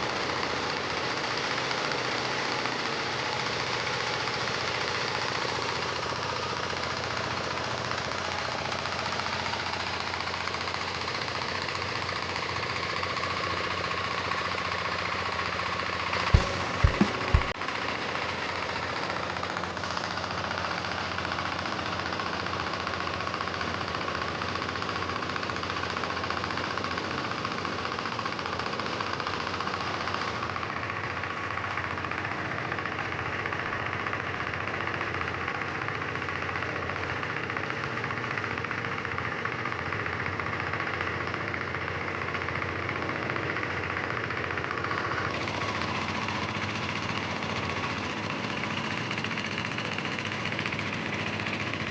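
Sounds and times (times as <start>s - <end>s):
diesel engine running: 0.0s - 51.9s.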